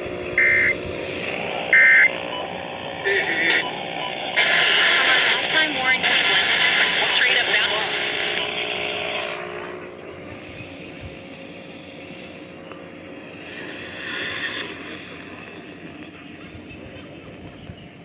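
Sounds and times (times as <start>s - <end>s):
radio static hiss: 0.0s - 10.9s.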